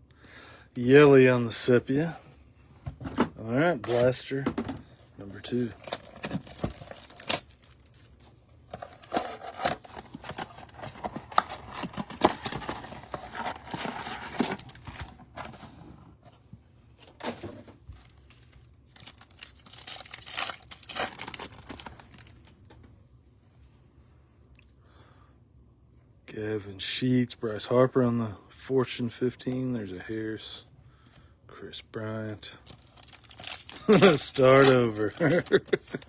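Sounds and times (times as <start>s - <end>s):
wrapping tearing and crinkling: 5.4s - 15.5s, 18.0s - 22.8s, 32.6s - 36.0s.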